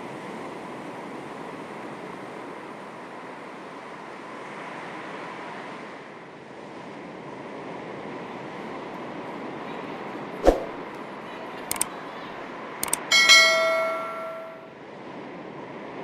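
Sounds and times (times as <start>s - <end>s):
gentle sea waves: 0.0s - 15.9s
light clicks: 12.8s - 13.1s
bell-like metallic ring: 12.9s - 14.7s.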